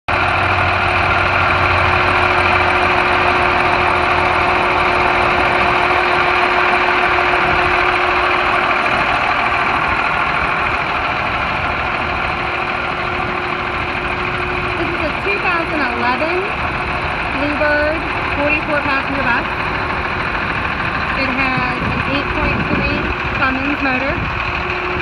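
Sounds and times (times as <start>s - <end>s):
diesel bus engine idling: 0.1s - 25.0s
steady high tone: 0.1s - 25.0s.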